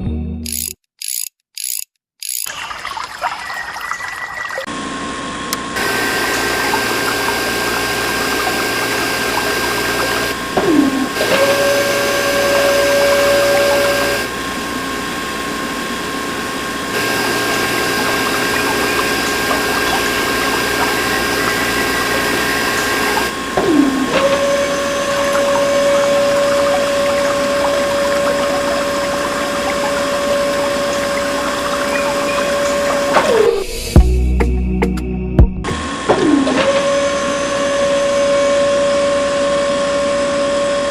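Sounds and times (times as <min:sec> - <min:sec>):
small electric motors whining: 0:00.5 - 0:02.5, 0:05.8 - 0:33.6
water running from toy pump: 0:00.5 - 0:04.7, 0:05.8 - 0:14.3, 0:16.9 - 0:33.2
lower motor tone sliding down: 0:05.8 - 0:34.4.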